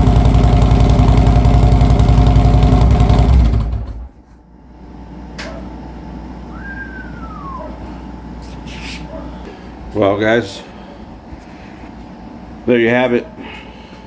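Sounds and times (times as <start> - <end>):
motorcycle engine idling: 0.0 - 4.1.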